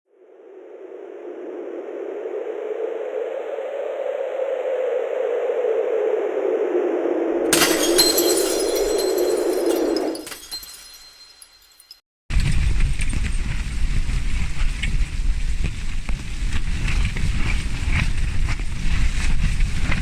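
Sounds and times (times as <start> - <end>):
crash with glassy clinks: 7.5 - 12.0.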